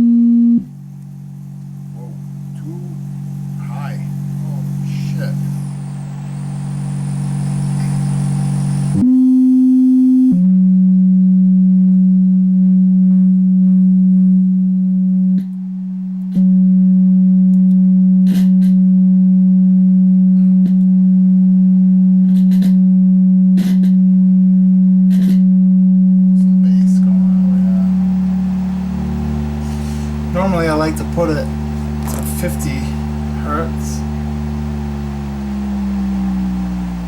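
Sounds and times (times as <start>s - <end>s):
sine-wave test tone: 0.0s - 37.0s.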